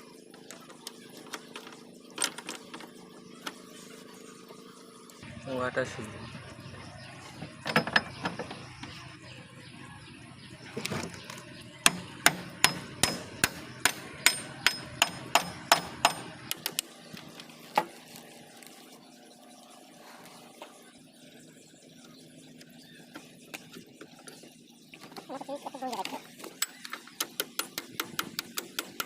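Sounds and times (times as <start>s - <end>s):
hammer striking metal gearbox: 11.9s - 16.4s.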